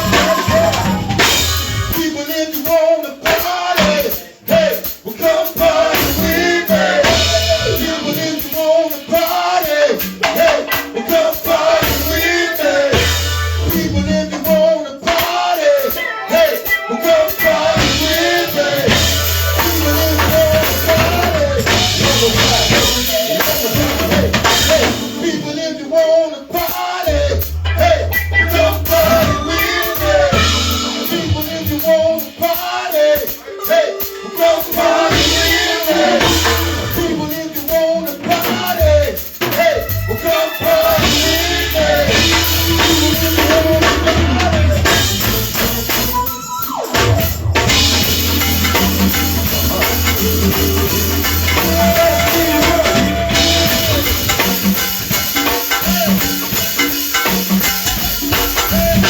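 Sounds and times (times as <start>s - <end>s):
bass: 0.0s - 2.2s, 5.6s - 8.3s, 11.5s - 14.7s, 17.4s - 25.6s, 27.0s - 32.3s, 35.0s - 37.6s, 38.2s - 59.0s
percussion: 0.0s - 25.7s, 26.5s - 59.0s
person singing: 0.0s - 54.8s, 58.0s - 59.0s
drum kit: 0.0s - 59.0s.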